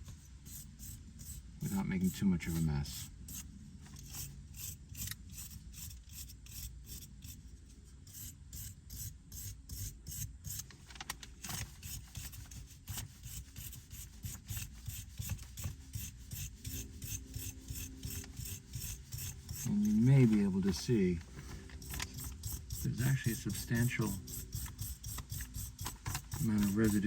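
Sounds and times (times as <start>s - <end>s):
wire brush scrubbing threads: 11.5s - 27.0s.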